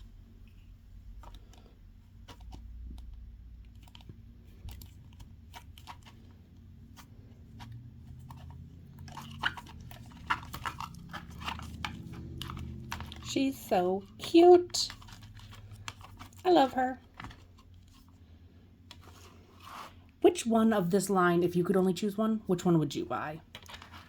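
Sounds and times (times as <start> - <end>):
plastic packaging clicks and crinkles: 1.1 - 6.4, 8.2 - 13.4, 14.7 - 18.1, 23.4 - 24.0.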